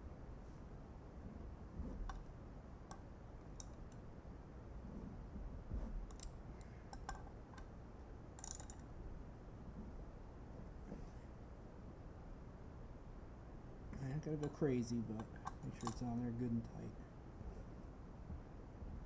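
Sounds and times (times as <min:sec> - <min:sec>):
wrench clicking: 0:08.4 - 0:08.8.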